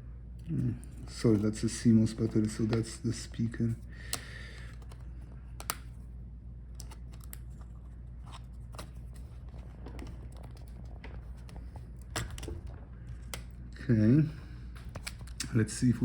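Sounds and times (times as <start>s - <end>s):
steady low hum: 0.0s - 16.0s
laptop parts clicking and tapping: 5.6s - 5.9s.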